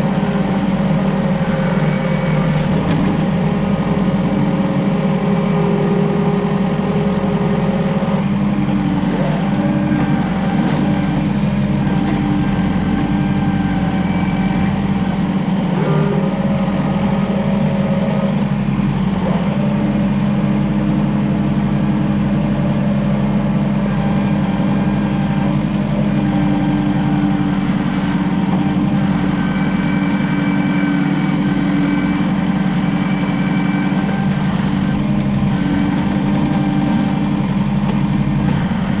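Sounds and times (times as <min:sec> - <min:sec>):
vehicle engine running: 0:00.0 - 0:39.0.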